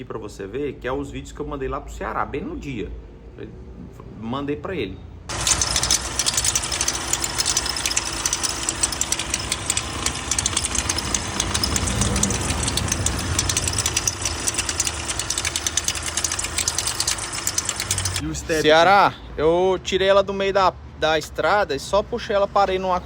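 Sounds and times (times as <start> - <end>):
diesel engine clattering: 5.3 - 18.8.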